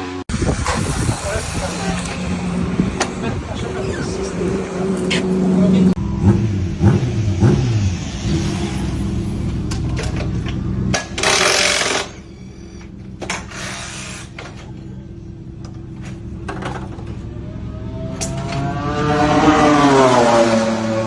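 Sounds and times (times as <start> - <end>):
motorbike engine passing: 0.6 - 6.0
sharp burst of hiss: 0.6 - 6.0.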